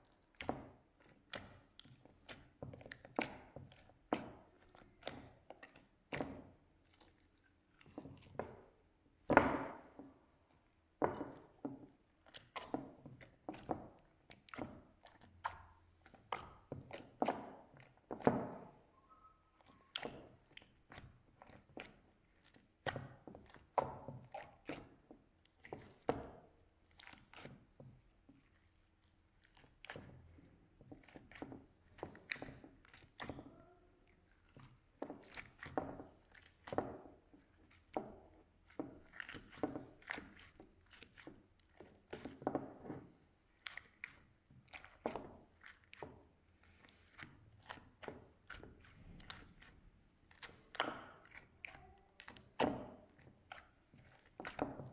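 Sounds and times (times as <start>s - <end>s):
wavering squeak: 18.9s - 19.6s.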